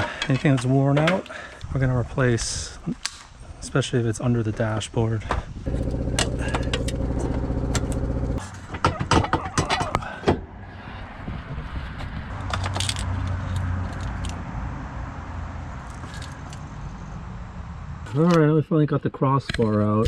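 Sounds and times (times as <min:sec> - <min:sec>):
machine hum: 0:05.7 - 0:08.4.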